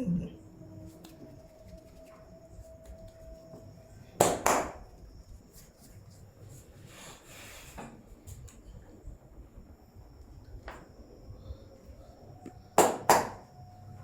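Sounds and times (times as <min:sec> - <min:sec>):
sharp hand slaps: 0:04.2 - 0:04.8, 0:12.8 - 0:13.4.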